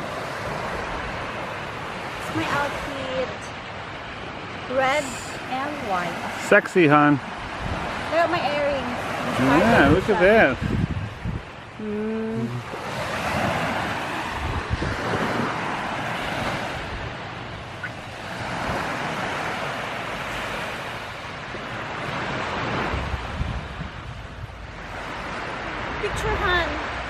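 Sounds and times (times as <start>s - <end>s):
ocean surf washing ashore: 0.0s - 27.0s
wind buffeting the microphone: 7.2s - 27.0s.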